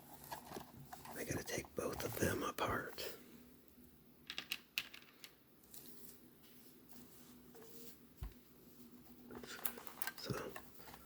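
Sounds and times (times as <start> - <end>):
soft rustling: 5.6 - 11.0.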